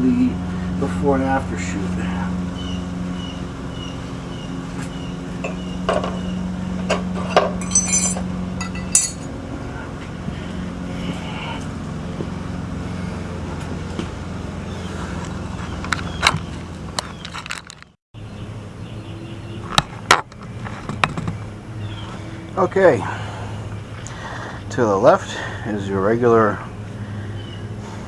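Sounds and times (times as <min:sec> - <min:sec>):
low mechanical hum: 0:00.0 - 0:28.0
metal spikes clinking: 0:07.2 - 0:09.3.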